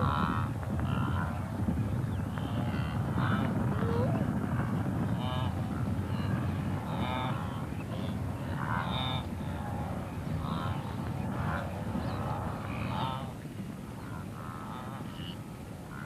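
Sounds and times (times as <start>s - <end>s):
steady low rumble: 0.0s - 15.1s.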